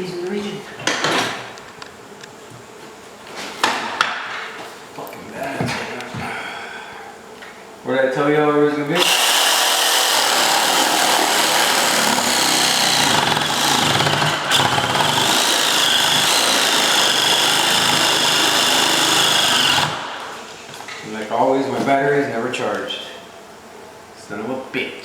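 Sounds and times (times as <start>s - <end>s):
power tool whining: 9.0s - 20.5s.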